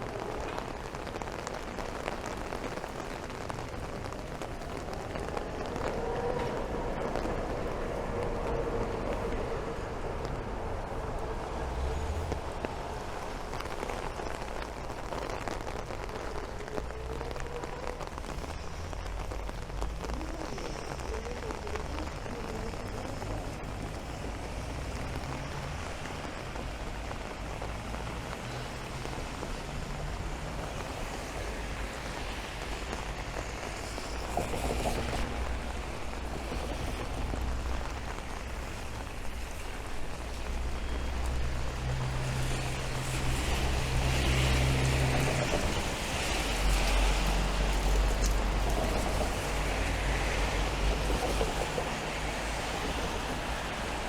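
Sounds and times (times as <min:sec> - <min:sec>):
cars passing on wet road: 0:00.0 - 0:54.0
rain falling on street: 0:00.0 - 0:54.0.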